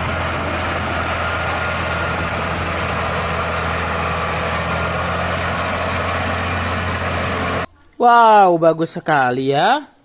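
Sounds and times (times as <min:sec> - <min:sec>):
truck engine idling: 0:00.0 - 0:07.7.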